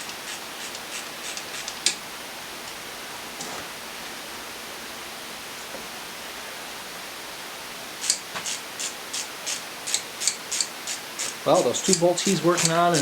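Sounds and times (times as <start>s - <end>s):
ratchet wrench clicking: 0.0s - 2.0s, 8.0s - 13.0s
steady hiss: 0.0s - 13.0s.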